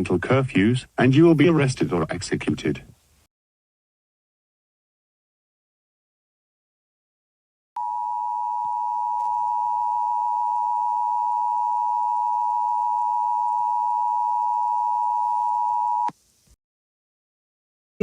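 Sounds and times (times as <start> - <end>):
two-tone electronic alarm tone: 7.8 - 16.1.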